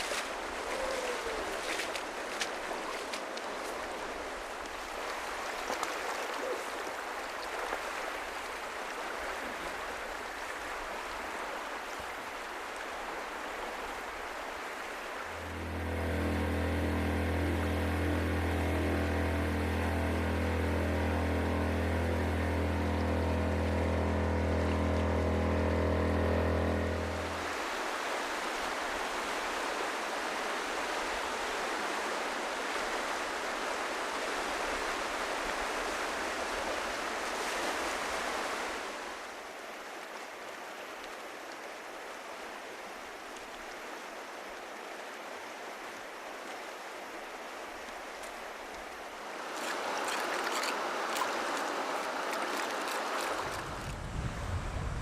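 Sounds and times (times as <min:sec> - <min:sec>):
steady low drone: 0:15.3 - 0:27.6
river rapids rushing: 0:49.2 - 0:53.9.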